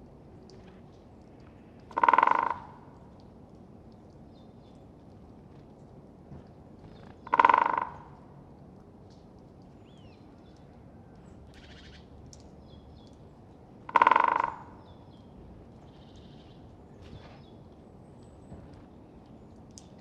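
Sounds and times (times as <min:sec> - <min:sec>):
woodpecker drumming on wood: 0:01.9 - 0:02.7, 0:07.2 - 0:08.1, 0:13.9 - 0:14.9
faint bird calls: 0:11.5 - 0:12.1, 0:13.9 - 0:17.6.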